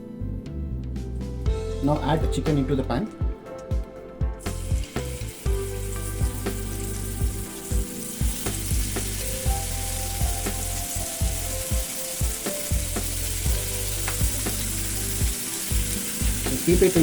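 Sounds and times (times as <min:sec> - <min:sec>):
chicken sizzling in a pan: 0:04.4 - 0:17.0.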